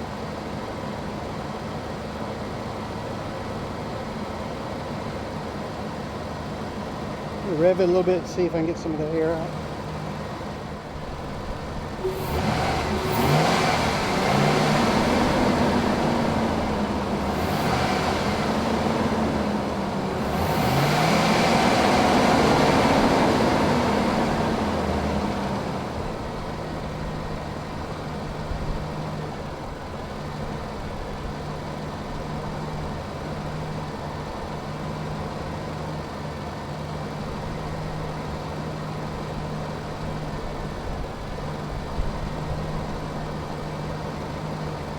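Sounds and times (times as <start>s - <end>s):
engine revving and idling: 0.0s - 44.9s.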